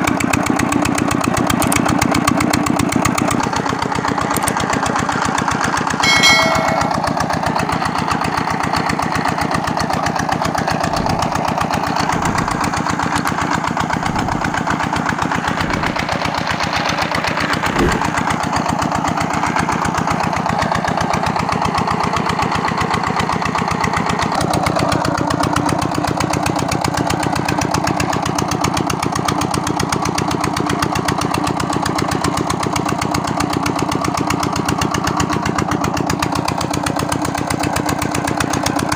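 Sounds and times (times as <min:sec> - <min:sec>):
diesel engine running: 0:00.0 - 0:06.1, 0:06.8 - 0:38.9
sharp knock: 0:06.0 - 0:07.2
short ringing clink: 0:06.0 - 0:07.6.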